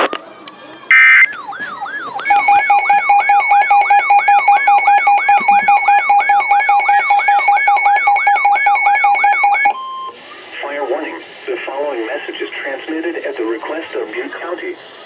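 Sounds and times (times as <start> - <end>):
rising electronic warning chirp: 0.8 - 10.2
rapidly pulsing beep: 0.9 - 10.2.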